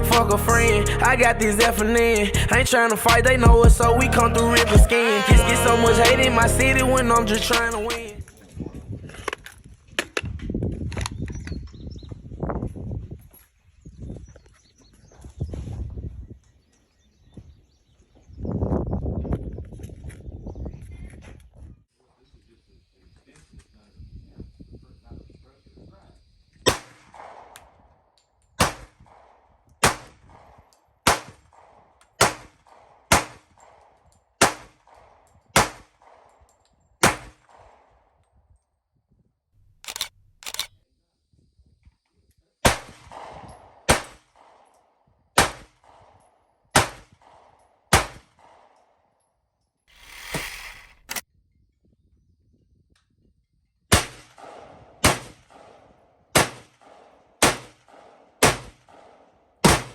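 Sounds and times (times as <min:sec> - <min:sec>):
gunshots with echo: 0:26.7 - 0:27.8, 0:28.6 - 0:36.4, 0:37.0 - 0:37.9, 0:42.7 - 0:44.7, 0:46.8 - 0:48.8, 0:54.0 - 0:59.9.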